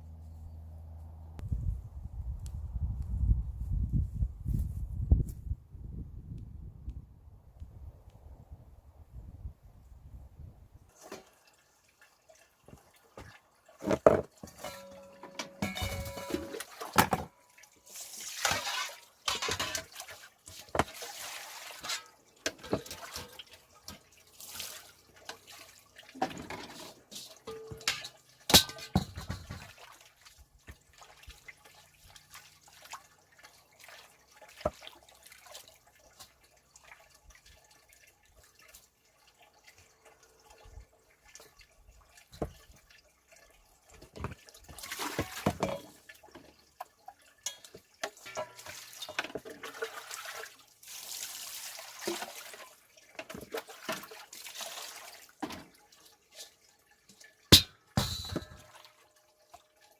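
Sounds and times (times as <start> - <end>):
running or pouring water: 10.9 - 59.9
water splashing and dripping: 10.9 - 59.9.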